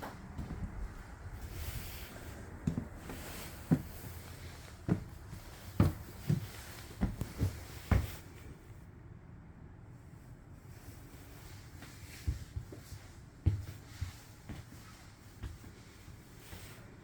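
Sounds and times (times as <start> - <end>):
footsteps on trailer floor: 0.0 - 8.4, 11.8 - 17.0.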